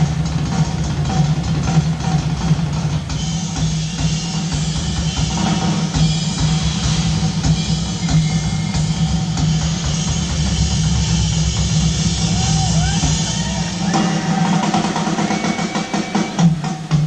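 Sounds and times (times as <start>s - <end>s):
drum kit: 0.0s - 17.0s
live rock band playing: 0.0s - 17.0s.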